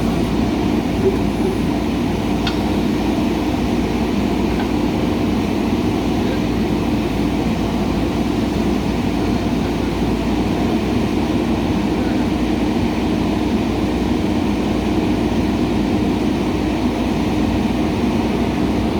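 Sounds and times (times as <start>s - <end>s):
diesel engine running: 0.0s - 18.9s.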